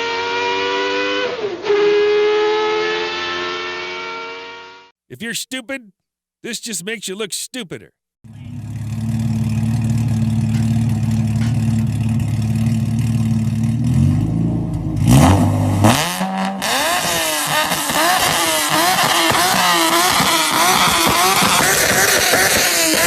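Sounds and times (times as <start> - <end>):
car engine idling and revving: 8.3 - 23.0.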